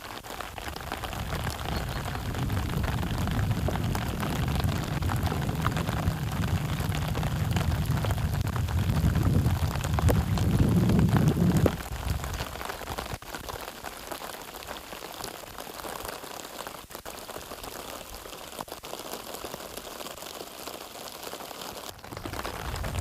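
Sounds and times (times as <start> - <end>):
heavy rain on fabric tarp: 0.0 - 23.0
low rumble: 1.4 - 11.7.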